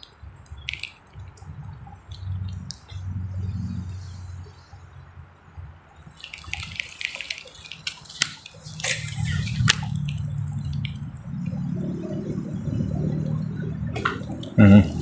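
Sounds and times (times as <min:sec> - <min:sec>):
water splashing at pond surface: 0:00.0 - 0:01.5, 0:06.0 - 0:11.9
low steady hum: 0:00.0 - 0:15.0.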